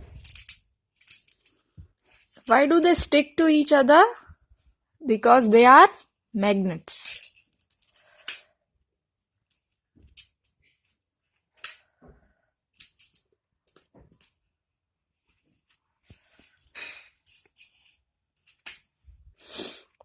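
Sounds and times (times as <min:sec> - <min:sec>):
magnetic blocks clicking together: 0:00.2 - 0:01.5, 0:17.3 - 0:18.9.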